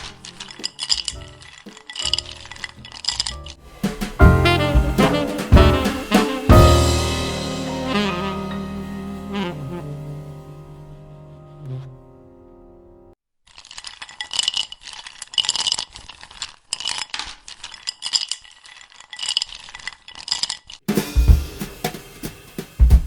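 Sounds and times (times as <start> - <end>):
deep thumps: 2.4 - 10.7
small objects clinking and rattling: 13.5 - 20.8.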